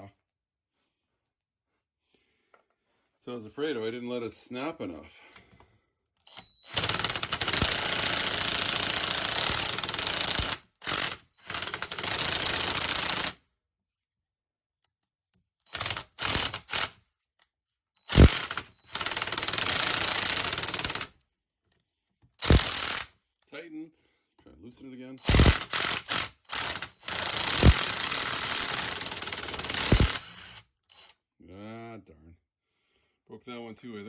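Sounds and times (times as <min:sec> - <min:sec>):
impact wrench hammering: 0:06.7 - 0:13.3, 0:15.7 - 0:17.0, 0:18.1 - 0:21.1, 0:22.4 - 0:23.1, 0:25.2 - 0:31.1.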